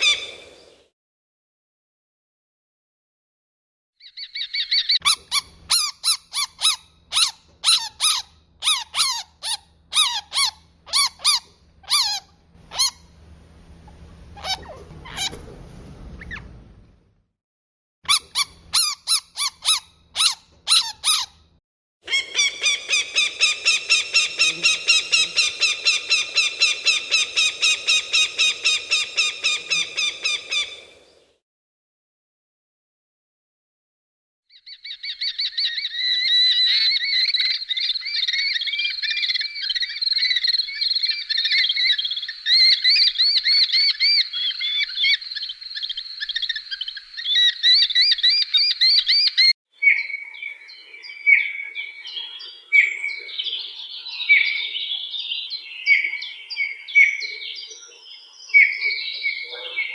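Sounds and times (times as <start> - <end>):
bird calling: 0.0 - 0.9, 4.0 - 16.6, 22.1 - 31.3, 34.5 - 59.9
rustling: 12.6 - 17.1.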